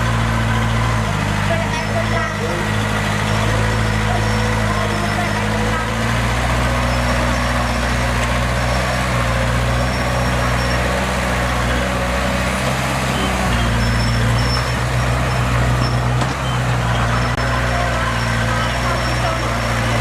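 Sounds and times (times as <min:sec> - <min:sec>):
heavy machinery diesel engine: 0:00.0 - 0:20.0.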